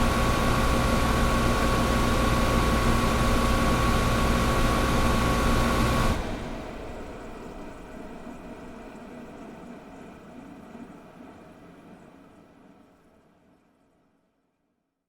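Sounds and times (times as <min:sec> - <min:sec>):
air conditioner running: 0:00.0 - 0:10.5.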